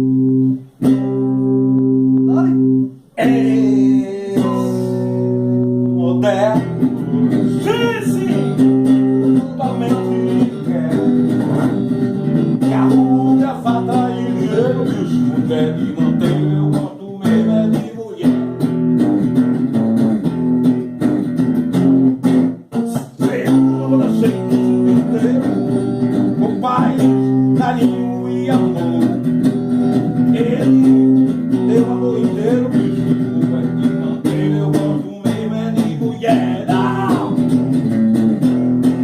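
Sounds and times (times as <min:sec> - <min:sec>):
acoustic guitar strummed: 0:00.0 - 0:39.0
person singing: 0:02.2 - 0:18.6, 0:22.7 - 0:39.0.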